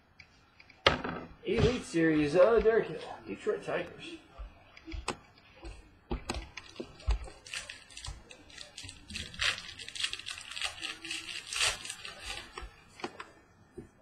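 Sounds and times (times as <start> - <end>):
wrapper crinkling and tearing: 6.6 - 12.8.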